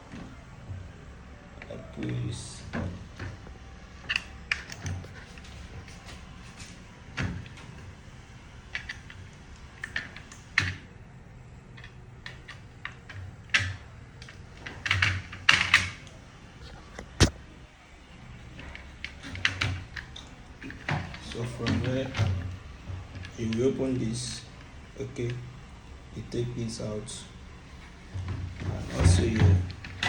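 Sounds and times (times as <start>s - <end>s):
plastic parts scraping: 1.6s - 10.9s
plastic parts clicking and knocking: 1.6s - 11.0s, 11.8s - 17.5s, 18.3s - 25.7s, 27.8s - 30.0s.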